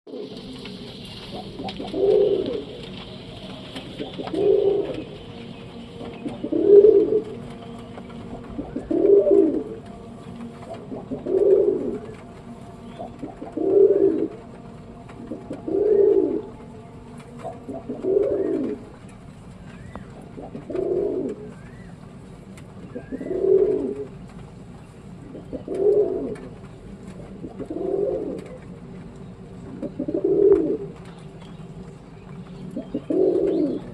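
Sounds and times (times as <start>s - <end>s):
pigeon cooing: 0.1s - 5.2s, 6.0s - 7.5s, 8.4s - 9.9s, 10.6s - 12.2s, 12.9s - 14.4s, 15.2s - 16.6s, 17.4s - 19.0s, 19.8s - 21.9s, 23.0s - 24.2s, 25.3s - 26.6s, 27.3s - 28.7s, 29.7s - 31.1s, 32.7s - 33.9s.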